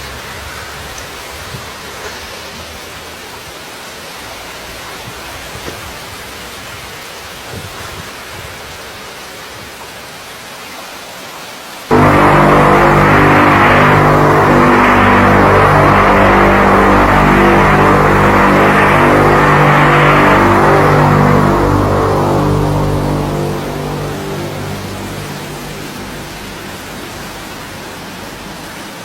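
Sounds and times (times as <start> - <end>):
loud droning of held tones: 11.9 - 29.0.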